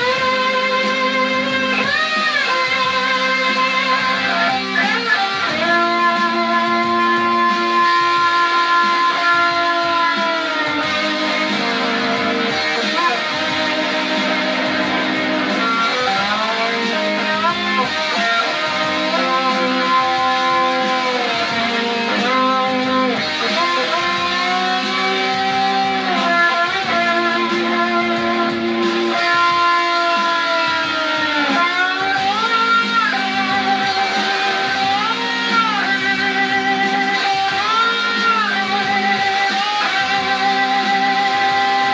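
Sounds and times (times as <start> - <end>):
guitar lead notes: 0.0 - 41.9
sustained guitar chords: 0.0 - 41.9.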